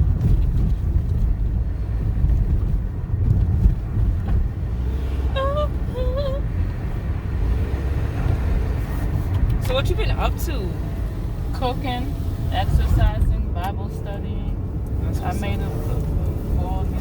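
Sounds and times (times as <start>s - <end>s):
road and engine rumble: 0.0s - 17.0s.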